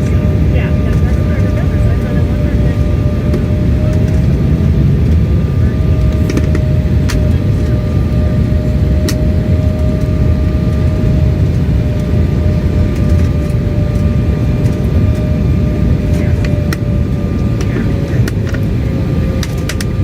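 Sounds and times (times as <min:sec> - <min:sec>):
airliner cabin low rumble: 0:00.0 - 0:20.0
mid-pitched whine: 0:00.0 - 0:20.0.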